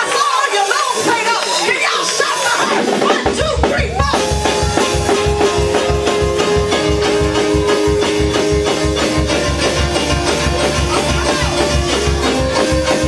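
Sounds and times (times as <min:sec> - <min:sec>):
church band worship music: 0:00.0 - 0:13.0.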